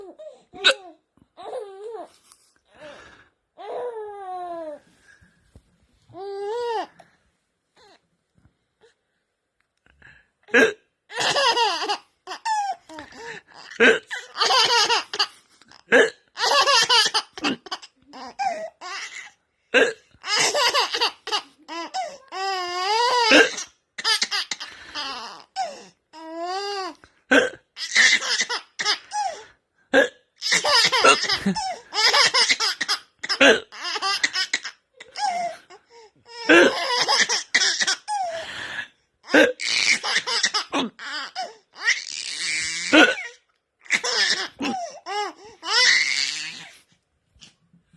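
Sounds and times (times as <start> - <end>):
man hiccuping: 10.5 - 10.9, 15.9 - 16.2, 19.7 - 20.0, 27.3 - 27.6, 39.3 - 39.6, 42.9 - 43.4
baby laughing: 11.1 - 19.3, 20.2 - 25.8, 27.8 - 29.4, 30.4 - 38.4, 39.3 - 46.7.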